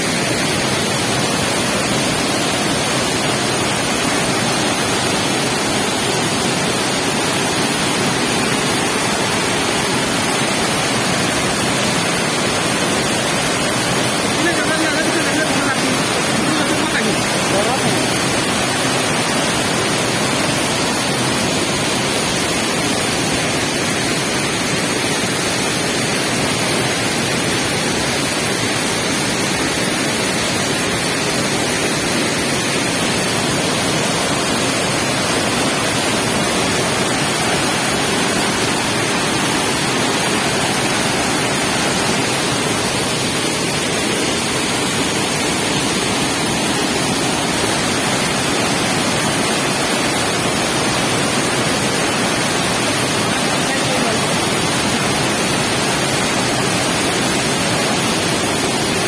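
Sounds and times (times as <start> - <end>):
waterfall rushing: 0.0 - 59.0.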